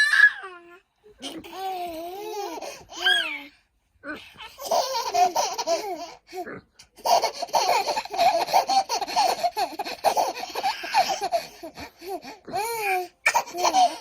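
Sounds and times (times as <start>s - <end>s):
baby squealing: 0.0s - 0.6s, 2.9s - 3.5s
baby laughing: 1.2s - 3.5s, 4.4s - 14.0s.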